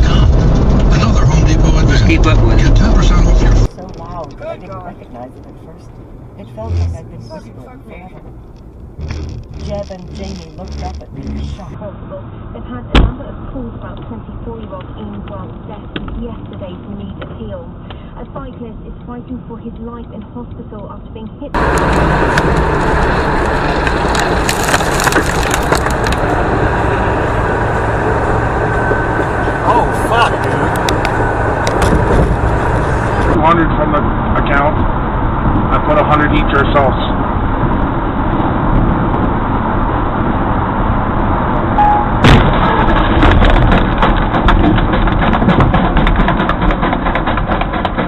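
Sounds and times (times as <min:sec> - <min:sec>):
road and wind noise: 0:00.0 - 0:48.0
sharp cracks and snaps: 0:21.7 - 0:26.2
tyre bursting bang: 0:42.0 - 0:43.8.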